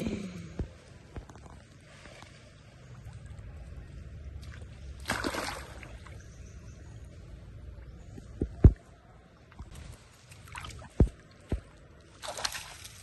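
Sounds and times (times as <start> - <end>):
low steady rumble: 0.0 - 10.2
water splashing in pool: 4.4 - 6.2, 10.3 - 13.0.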